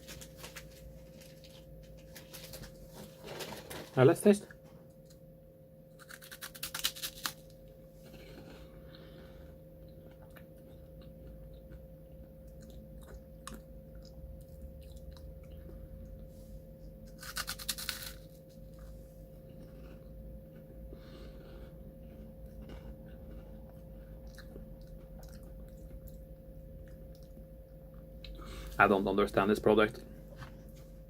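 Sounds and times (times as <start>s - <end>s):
faint steady hum: 0.0s - 31.0s
crunching snack: 5.9s - 8.6s, 17.1s - 18.8s
soft chewing clicks: 9.8s - 16.2s, 22.4s - 26.2s, 26.8s - 28.4s.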